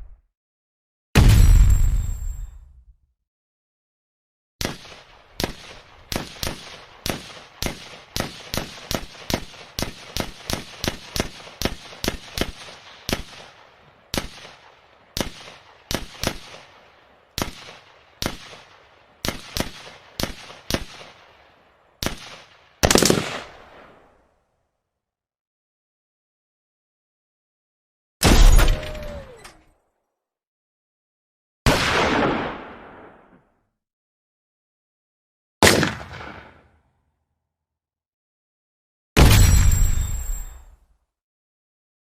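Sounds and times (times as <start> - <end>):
loud gun blast: 1.2 - 2.5, 28.2 - 29.1, 31.7 - 33.1, 35.6 - 36.5, 39.2 - 40.6
pistol gunshots: 4.6 - 21.3, 22.0 - 23.8, 31.7 - 33.3, 35.6 - 36.7.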